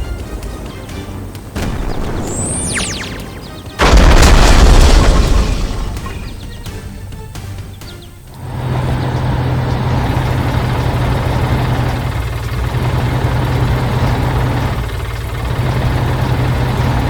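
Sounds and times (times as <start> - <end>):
background music: 0.0 - 11.7
heavy boom: 1.6 - 6.9.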